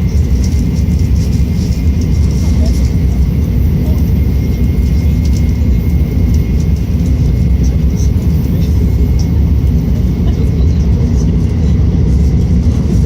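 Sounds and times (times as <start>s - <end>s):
train rumbling at high speed: 0.0s - 13.0s.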